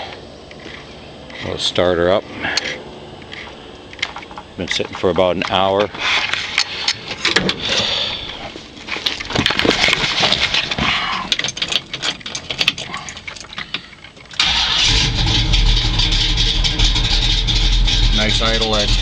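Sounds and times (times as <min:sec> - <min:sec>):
car engine starting and rumbling: 0:14.2 - 0:19.0.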